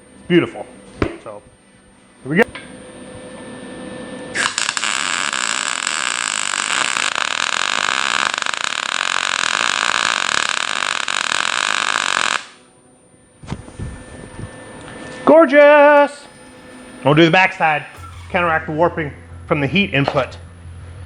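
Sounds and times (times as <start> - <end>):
welding arc sizzling: 2.7 - 12.7, 13.4 - 21.0.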